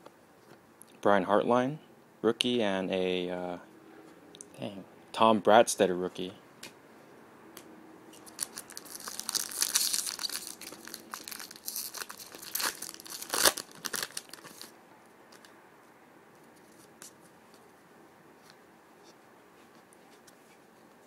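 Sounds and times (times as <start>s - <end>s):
wrapper tearing and crinkling: 8.2s - 14.7s.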